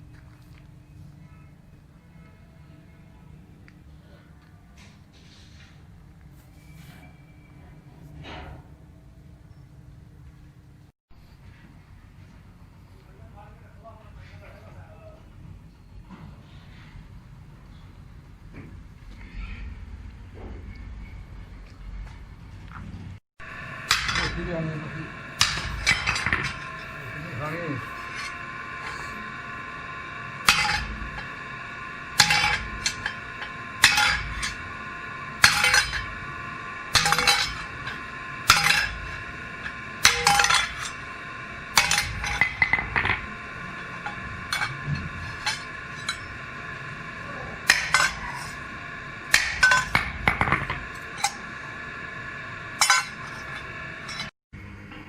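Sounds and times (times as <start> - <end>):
steady high whine: 23.4 - 54.4
hammer striking metal: 23.5 - 43.4, 44.0 - 51.6, 52.8 - 54.3.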